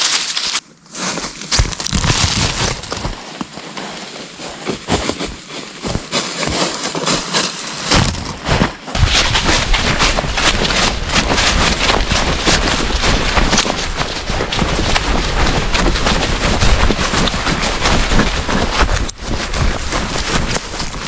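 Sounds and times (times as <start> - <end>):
low rumble: 7.9 - 21.0.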